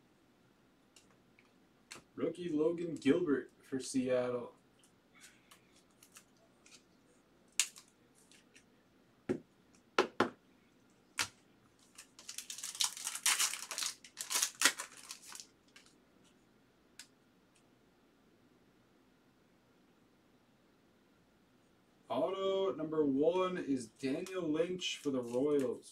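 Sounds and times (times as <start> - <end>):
cards and packaging clicking: 5.5 - 6.8, 7.5 - 8.6, 11.2 - 15.9
wrapper crinkling and tearing: 7.5 - 8.6, 11.2 - 16.0.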